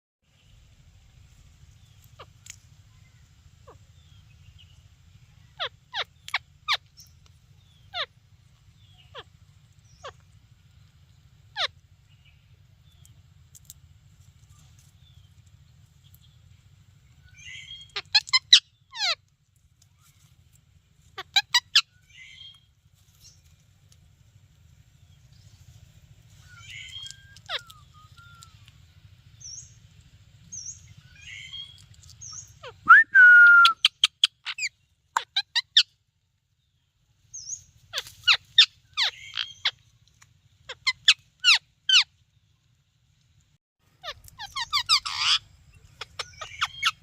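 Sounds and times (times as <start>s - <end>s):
faint low hum: 0.3s - 33.9s
parrot chirping calls: 1.8s - 4.7s, 5.4s - 10.4s, 11.5s - 11.8s, 17.3s - 19.2s, 21.1s - 22.6s, 26.3s - 29.8s, 30.5s - 35.9s, 37.3s - 39.8s, 40.6s - 42.1s, 44.0s - 47.0s.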